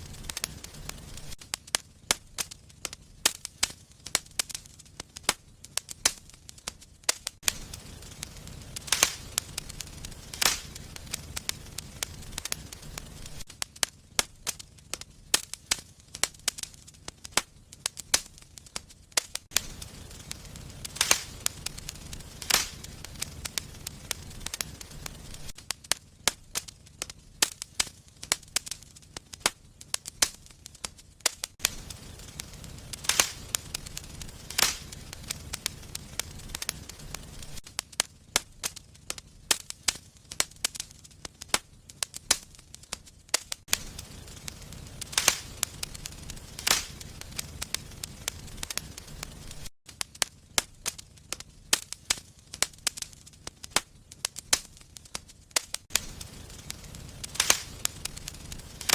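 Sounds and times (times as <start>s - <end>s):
low rumble of flames: 0.0s - 58.9s
wood fire crackling and popping: 0.0s - 58.9s.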